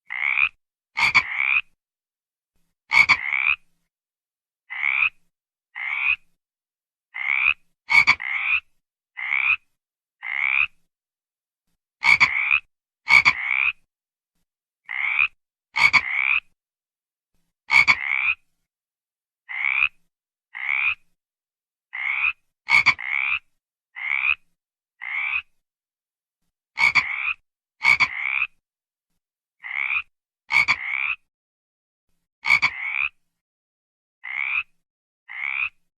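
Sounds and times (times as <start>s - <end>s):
frog croaking: 0.1s - 1.8s, 2.9s - 3.6s, 4.7s - 6.2s, 7.1s - 10.8s, 12.0s - 13.9s, 14.8s - 16.6s, 17.7s - 18.4s, 19.5s - 21.0s, 21.9s - 24.4s, 25.0s - 25.5s, 26.8s - 28.6s, 29.6s - 31.3s, 32.4s - 33.2s, 34.2s - 34.7s, 35.3s - 35.8s.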